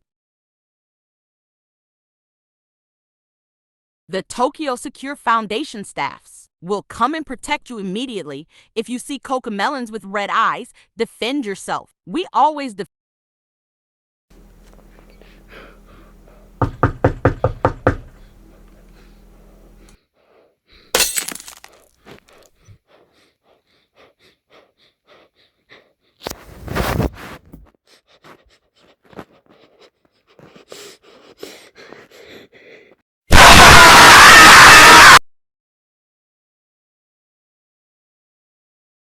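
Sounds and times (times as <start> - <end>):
low hum: 14.3 - 20.0
sharp knocks: 16.5 - 18.2
harsh burst of noise: 33.3 - 35.2.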